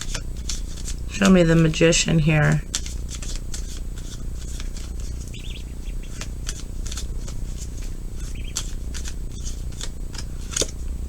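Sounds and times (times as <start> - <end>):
cards being shuffled and flicked: 0.0 - 1.9, 2.5 - 11.0
low steady hum: 0.0 - 11.0
faint bird chirps: 5.0 - 6.2, 8.2 - 8.7.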